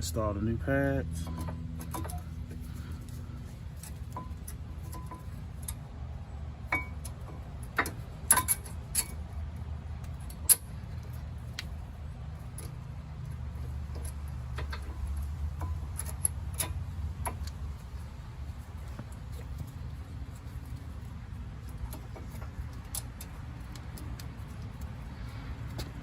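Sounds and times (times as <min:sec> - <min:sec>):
steady low hum: 0:00.0 - 0:26.0
metallic clicks and clinks: 0:01.2 - 0:05.9, 0:06.6 - 0:11.7, 0:12.4 - 0:18.3.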